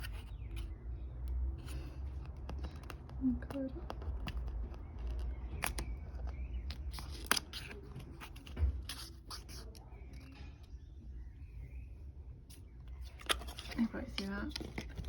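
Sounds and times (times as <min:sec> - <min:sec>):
paper rustling: 0:12.5 - 0:15.0.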